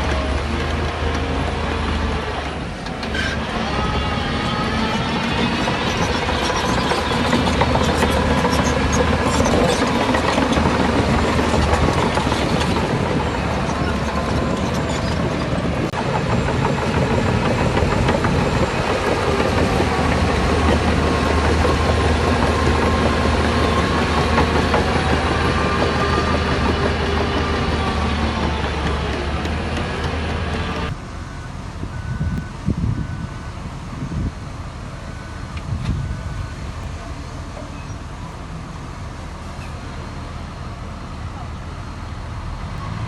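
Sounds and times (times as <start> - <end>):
heavy diesel machinery running: 0.0 - 43.0.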